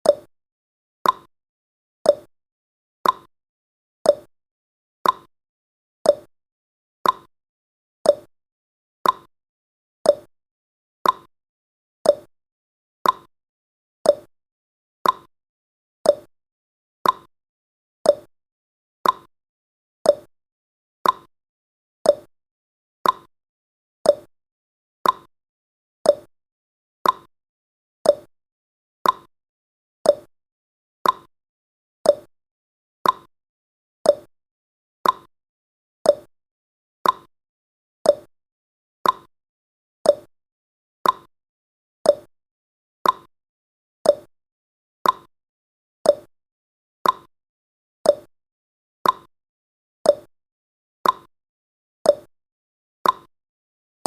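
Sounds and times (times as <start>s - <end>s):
clock-like timer ticking: 1.0s - 1.3s, 2.1s - 2.3s, 3.0s - 3.3s, 4.1s - 4.3s, 5.0s - 5.3s, 6.1s - 6.3s, 7.0s - 7.3s, 8.1s - 8.3s, 9.0s - 9.3s, 10.1s - 10.3s, 11.0s - 11.3s, 12.1s - 12.3s, 13.0s - 13.3s, 14.1s - 14.3s, 15.0s - 15.3s, 16.1s - 16.3s, 17.0s - 17.3s, 18.1s - 18.3s, 19.0s - 19.3s, 20.1s - 20.3s, 21.0s - 21.3s, 22.1s - 22.3s, 23.0s - 23.3s, 24.1s - 24.3s, 25.0s - 25.3s, 26.1s - 26.3s, 27.0s - 27.3s, 28.0s - 28.3s, 29.0s - 29.3s, 30.1s - 30.3s, 31.0s - 31.3s, 32.1s - 32.3s, 33.0s - 33.3s, 34.1s - 34.3s, 35.0s - 35.3s, 36.1s - 36.3s, 37.0s - 37.3s, 38.1s - 38.3s, 39.0s - 39.3s, 40.1s - 40.3s, 41.0s - 41.3s, 42.1s - 42.3s, 43.0s - 43.3s, 44.1s - 44.3s, 45.0s - 45.3s, 46.1s - 46.3s, 47.0s - 47.3s, 48.1s - 48.3s, 49.0s - 49.3s, 50.1s - 50.3s, 51.0s - 51.3s, 52.1s - 52.3s, 53.0s - 53.3s.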